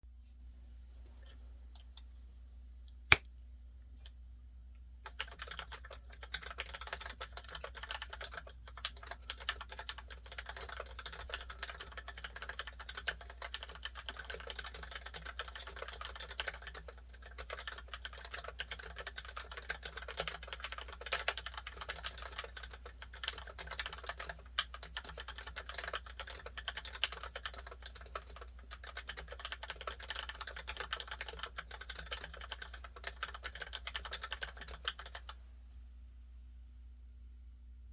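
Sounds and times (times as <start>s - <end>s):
fast typing on mechanical keyboard: 5.0s - 35.4s.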